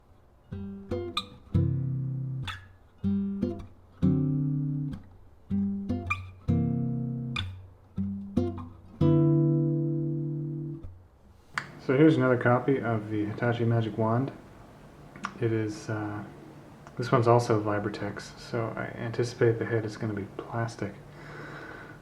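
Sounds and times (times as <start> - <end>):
acoustic guitar plucking and strumming: 0.5 - 11.0.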